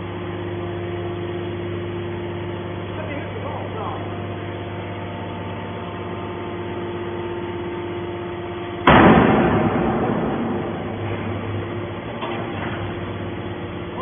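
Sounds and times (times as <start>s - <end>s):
metal baler machine hum: 0.0s - 14.0s
loud crash: 8.8s - 12.0s.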